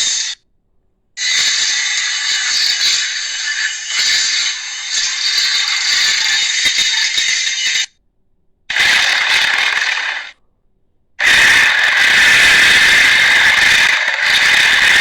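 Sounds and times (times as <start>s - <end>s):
harsh rasping creature calls: 1.2s - 7.4s, 8.7s - 10.3s, 11.2s - 15.0s.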